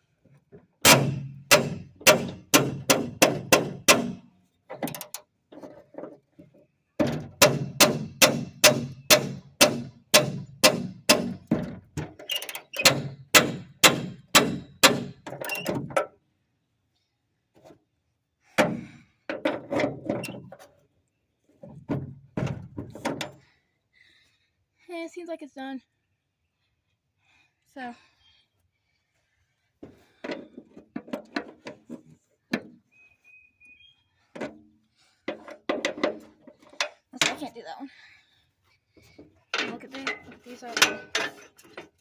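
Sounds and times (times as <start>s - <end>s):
sharp metallic knocks on bolts: 0.8s - 5.2s, 7.0s - 16.1s, 35.3s - 37.5s, 39.5s - 41.9s.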